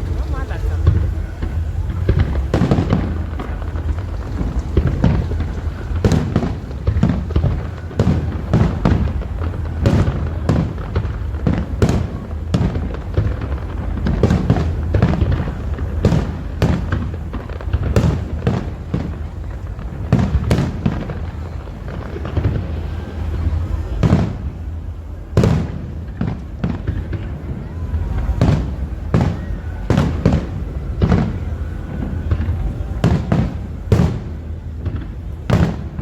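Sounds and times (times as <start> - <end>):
fireworks bangs: 0.0 - 36.0
steady low rumble: 0.0 - 36.0.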